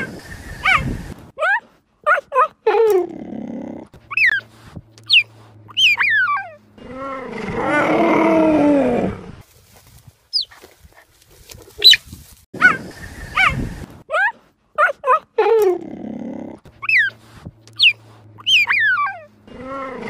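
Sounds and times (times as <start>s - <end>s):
big cat roaring: 6.3s - 9.4s, 15.6s - 16.7s, 18.9s - 20.0s.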